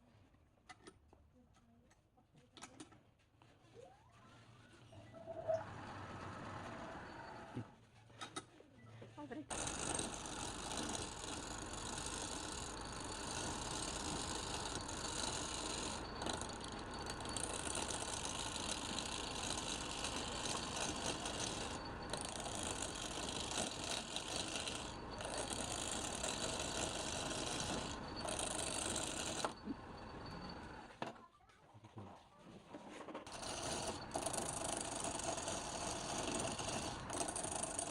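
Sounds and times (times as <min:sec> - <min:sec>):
lathe tool scraping wood: 0:09.5 - 0:30.8, 0:33.3 - 0:37.9.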